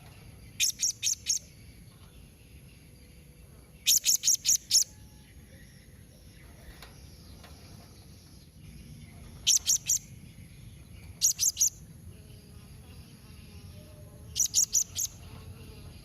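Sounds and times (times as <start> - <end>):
parrot high-pitched chirps: 14.4 - 15.2.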